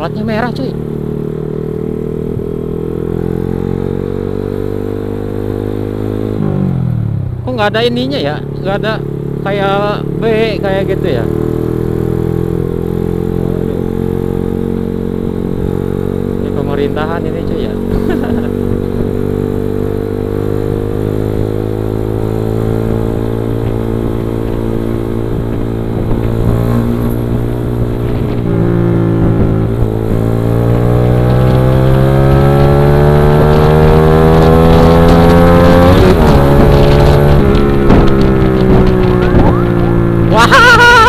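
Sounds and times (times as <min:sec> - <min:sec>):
motorcycle engine under throttle: 0:00.0 - 0:41.0.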